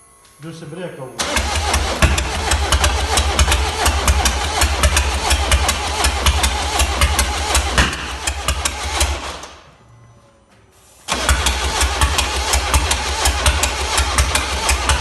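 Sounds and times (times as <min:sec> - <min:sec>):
diesel engine running: 0:01.2 - 0:09.8, 0:11.1 - 0:15.0
sharp ticking engine knock: 0:01.4 - 0:09.4, 0:11.2 - 0:15.0.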